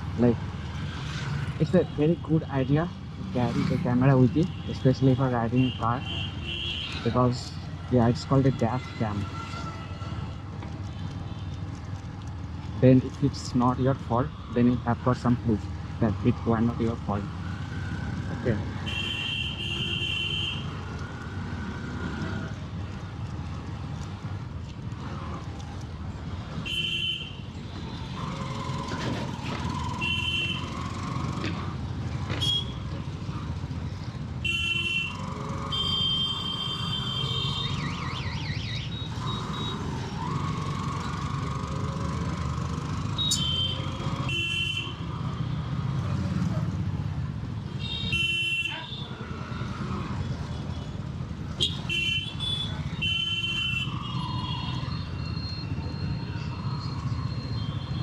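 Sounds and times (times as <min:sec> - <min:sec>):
motorcycle engine: 0:27.7 - 0:48.1
vehicle horn blasts: 0:34.4 - 0:37.7, 0:43.2 - 0:45.0, 0:47.8 - 0:49.0.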